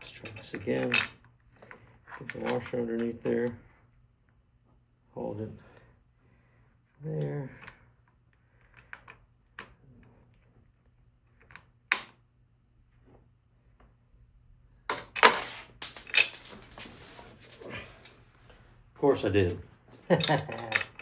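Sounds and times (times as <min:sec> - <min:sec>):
metal hardware clattering: 0:15.0 - 0:18.1, 0:19.1 - 0:19.5.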